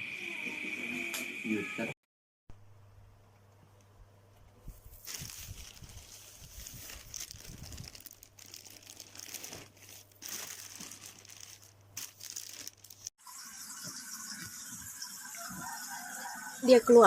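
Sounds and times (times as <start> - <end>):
plastic packaging crinkling: 4.8 - 13.2.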